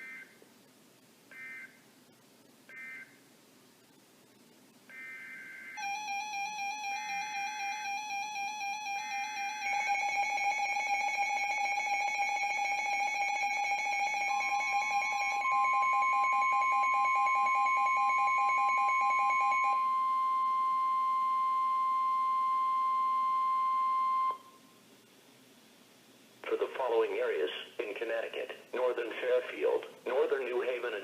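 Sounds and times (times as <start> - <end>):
steady warning alarm tone: 4.9 - 24.8.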